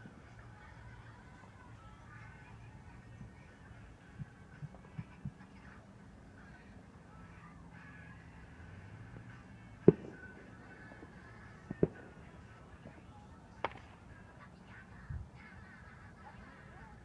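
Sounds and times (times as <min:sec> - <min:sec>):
firecrackers banging: 0:09.8 - 0:14.4.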